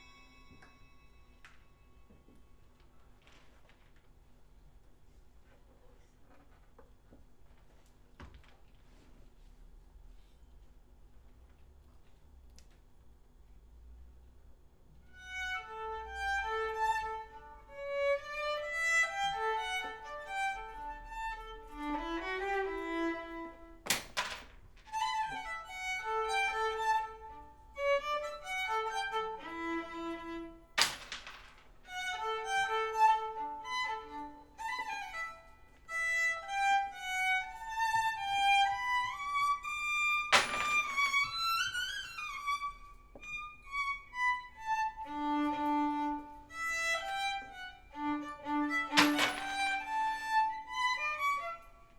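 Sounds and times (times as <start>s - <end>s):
violin melody: 15.1s - 23.8s, 24.9s - 30.8s, 31.9s - 40.3s, 41.3s - 51.9s.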